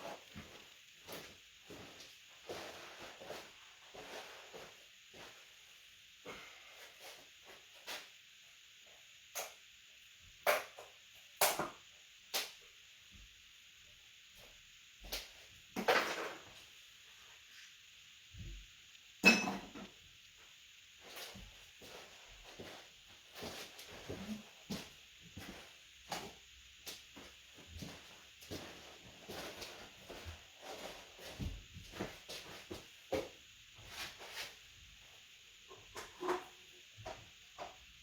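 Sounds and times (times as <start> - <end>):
faint steady hiss: 0.0 - 38.0.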